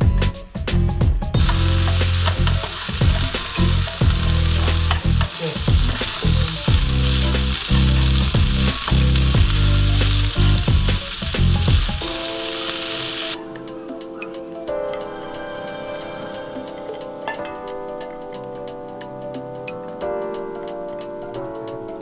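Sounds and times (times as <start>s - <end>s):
food sizzling in a pan: 1.4s - 13.4s.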